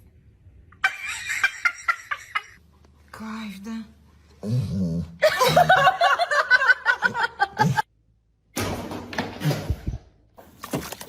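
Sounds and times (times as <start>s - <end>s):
person laughing: 5.2s - 7.8s.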